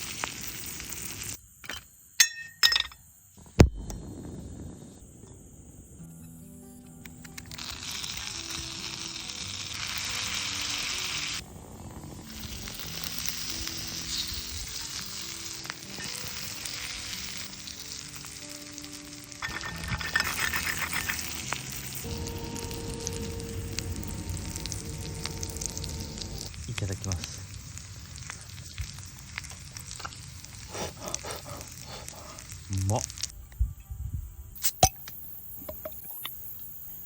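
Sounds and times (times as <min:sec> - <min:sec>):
sausages sizzling in a pan: 0:00.0 - 0:01.5, 0:07.1 - 0:33.4
soft background music: 0:05.6 - 0:27.5, 0:30.6 - 0:37.0.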